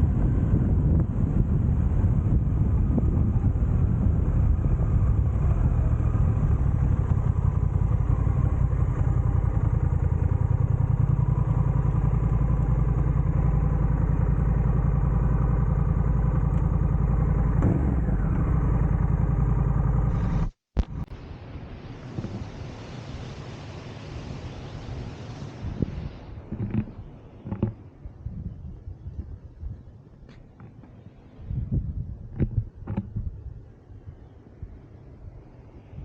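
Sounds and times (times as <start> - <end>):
motorcycle engine running: 0.0 - 21.1
quiet wind-like noise: 0.0 - 36.0.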